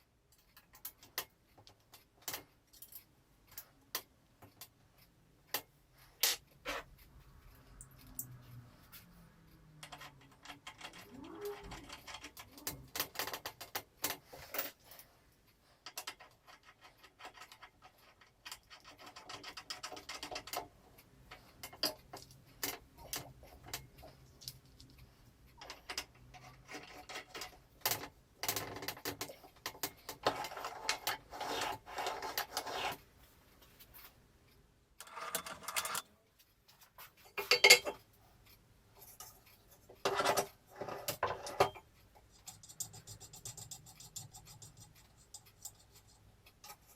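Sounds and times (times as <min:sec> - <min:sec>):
metal parts clinking and scraping: 0:37.3 - 0:38.0.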